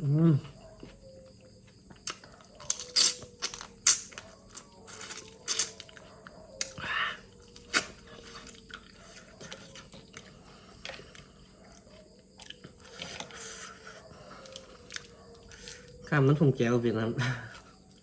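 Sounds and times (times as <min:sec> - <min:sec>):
person chewing food: 0:00.5 - 0:16.0.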